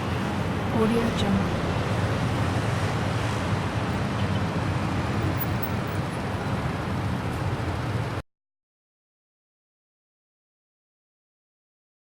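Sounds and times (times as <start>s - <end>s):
road traffic rumble: 0.0s - 8.2s.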